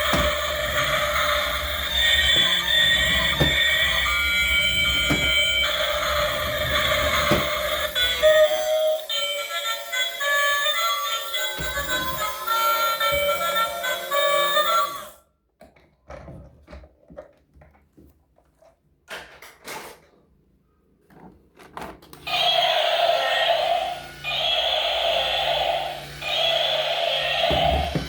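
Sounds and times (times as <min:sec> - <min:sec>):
music: 0:00.0 - 0:15.2.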